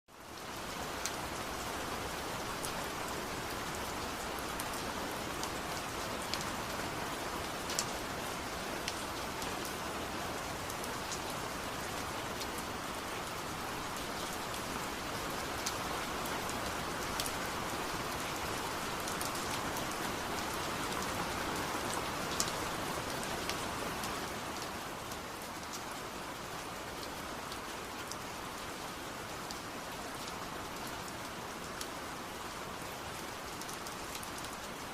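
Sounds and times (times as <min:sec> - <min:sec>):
steady rain falling: 0:00.1 - 0:34.9.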